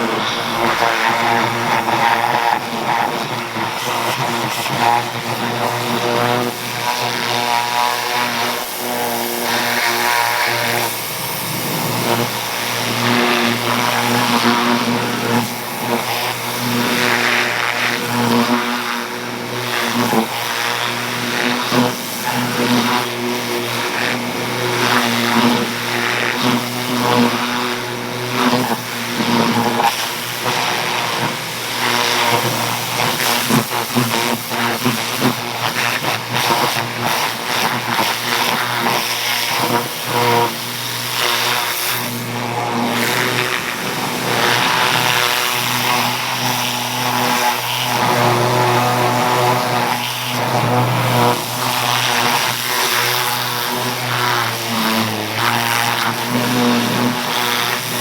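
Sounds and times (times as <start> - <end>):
pressure washer motor hum: 0.0 - 58.0
water jet spraying hiss: 7.6 - 18.3, 28.6 - 37.4, 41.3 - 53.2.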